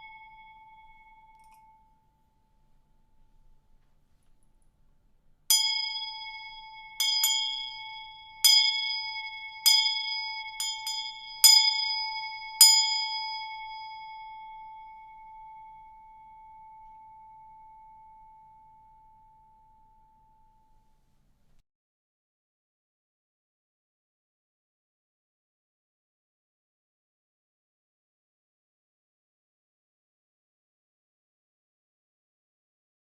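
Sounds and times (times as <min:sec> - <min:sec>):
small bell ringing: 0:00.0 - 0:02.7, 0:05.5 - 0:20.9.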